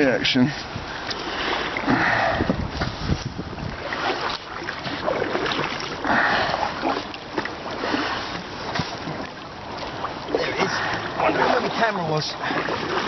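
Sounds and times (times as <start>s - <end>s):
water sloshing around kayak: 0.0s - 13.0s
light knocks from boat: 2.5s - 6.0s, 6.8s - 11.1s.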